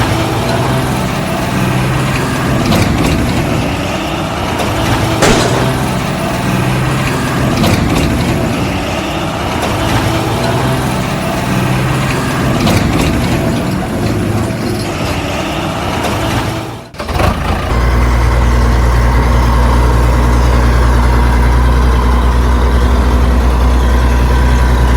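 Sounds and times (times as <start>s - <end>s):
heavy engine humming: 0.0s - 24.9s
sharp clicks or knocks: 5.2s - 6.6s.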